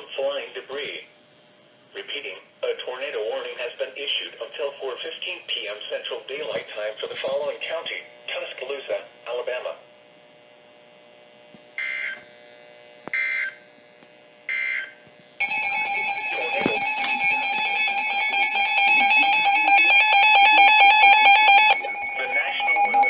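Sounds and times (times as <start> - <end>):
emergency alert data tones: 11.8 - 12.2, 14.5 - 23.0
continuous electronic alert tone: 14.5 - 23.0.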